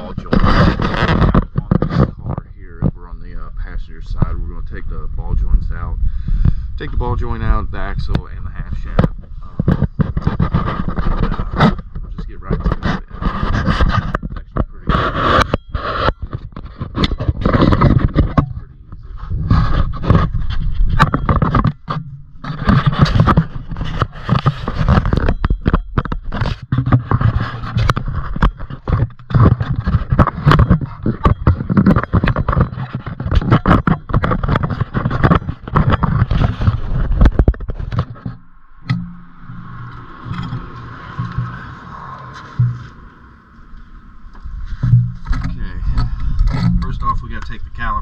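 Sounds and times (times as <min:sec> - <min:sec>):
metal tools clanking and scraping: 0:20.9 - 0:47.8.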